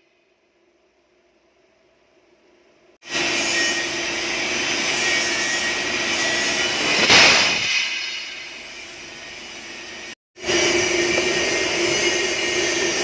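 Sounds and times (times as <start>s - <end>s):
cutting torch hissing: 4.5s - 13.0s.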